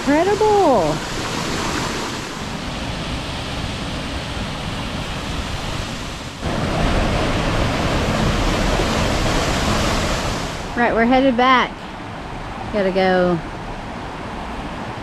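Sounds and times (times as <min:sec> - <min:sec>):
waterfall rushing: 0:00.0 - 0:13.7.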